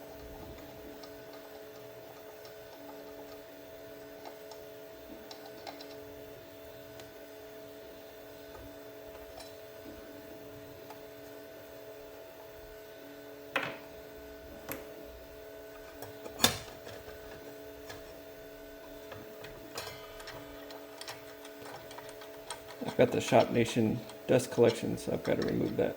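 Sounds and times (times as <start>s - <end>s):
faint steady hum: 0.0s - 25.9s
clicks and knocks of hand tools: 19.1s - 25.9s.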